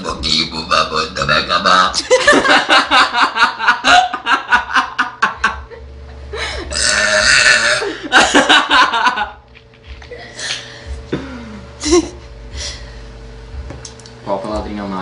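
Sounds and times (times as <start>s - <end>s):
person burping loudly: 6.7s - 8.0s.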